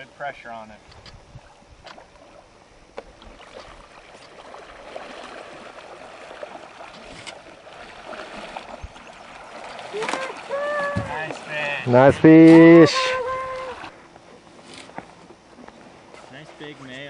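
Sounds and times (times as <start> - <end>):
river water rushing and lapping: 1.4 - 15.6
light knocks on boat: 10.8 - 11.4.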